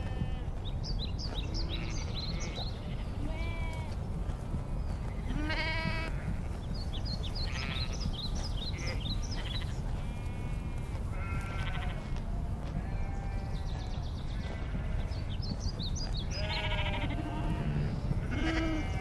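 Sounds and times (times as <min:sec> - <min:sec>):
sheep bleating: 0:01.5 - 0:04.0, 0:05.2 - 0:06.6, 0:07.4 - 0:13.8, 0:14.4 - 0:15.2, 0:16.3 - 0:19.0.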